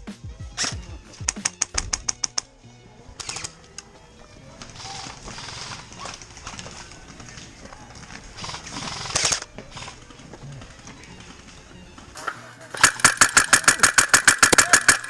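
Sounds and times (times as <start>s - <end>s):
footsteps crunching: 3.9s - 13.6s
rattle of sharp clicks: 12.2s - 15.0s.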